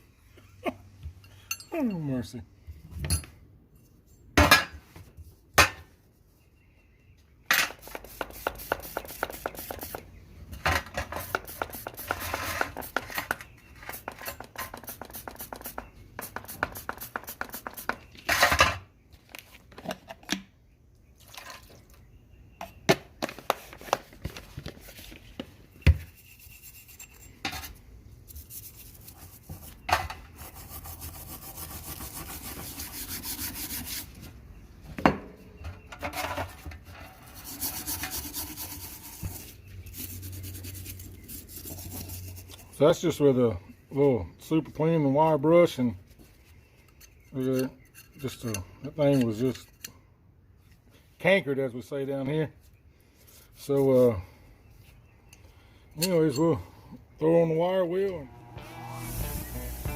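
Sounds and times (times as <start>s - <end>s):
wire brush scrubbing steel: 7.7s - 10.0s, 11.2s - 18.0s, 28.2s - 34.2s, 37.2s - 42.6s.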